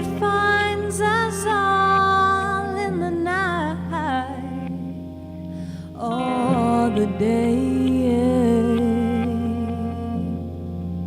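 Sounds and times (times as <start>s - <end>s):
woman singing a long note: 0.0s - 5.0s, 5.9s - 10.7s
keyboard chords: 0.0s - 11.0s.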